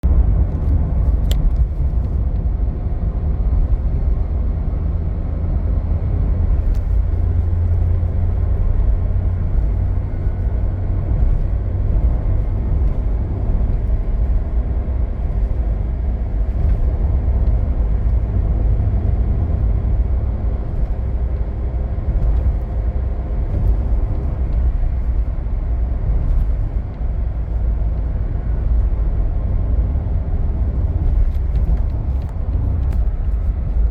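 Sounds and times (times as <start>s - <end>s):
car engine and road rumble: 0.0s - 33.9s.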